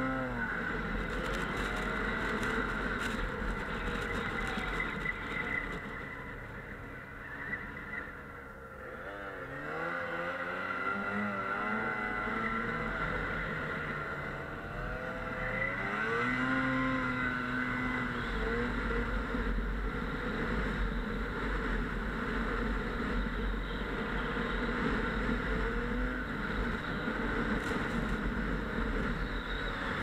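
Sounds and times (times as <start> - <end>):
snowmobile engine revving: 0.0 - 3.0, 8.8 - 19.6.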